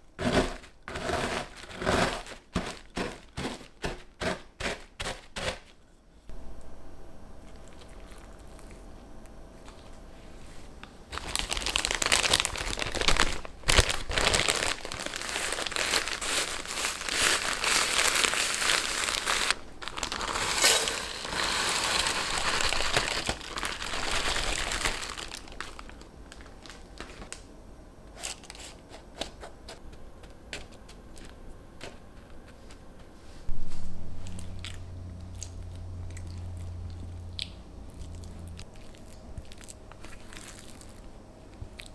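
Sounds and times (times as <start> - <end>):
plastic packaging crinkling: 10.6 - 27.5.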